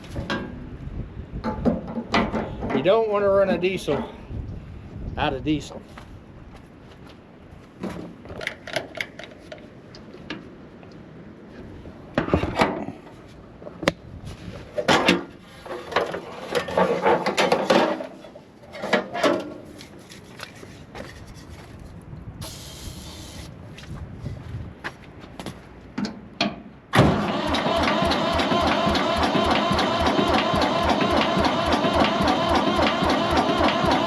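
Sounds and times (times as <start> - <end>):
hard objects clunking and scraping: 0.0 - 0.7, 1.4 - 3.0, 12.1 - 21.7
short hiss: 22.4 - 23.5.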